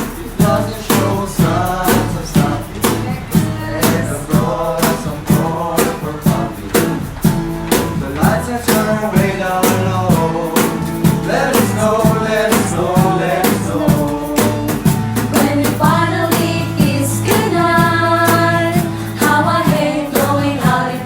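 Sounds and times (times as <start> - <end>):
bass: 0.0 - 21.0
drum beat: 0.0 - 21.0
guitar: 0.0 - 21.0
person singing: 8.0 - 21.0.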